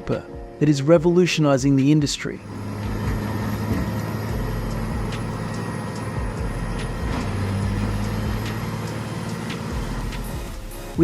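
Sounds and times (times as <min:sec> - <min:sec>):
wood chipper running: 0:02.4 - 0:10.9
wood knocking in chipper: 0:02.8 - 0:05.4.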